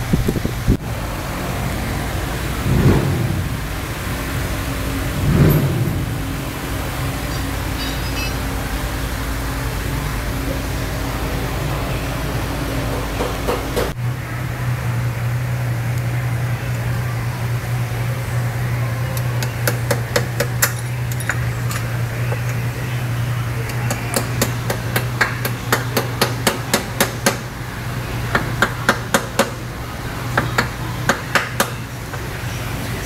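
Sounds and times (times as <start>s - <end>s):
hammer tapping on metal: 19.2s - 22.6s, 23.7s - 27.5s.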